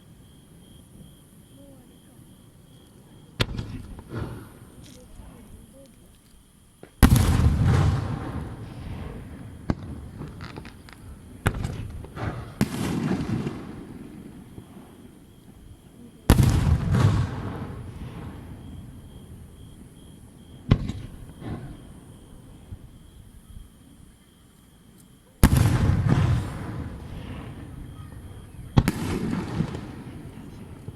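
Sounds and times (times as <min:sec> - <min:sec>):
small firework cracks: 0:02.8 - 0:15.1, 0:20.7 - 0:21.8, 0:25.4 - 0:30.9
firework shells booming: 0:03.4 - 0:05.3, 0:06.8 - 0:15.2, 0:16.3 - 0:23.0, 0:25.4 - 0:30.9.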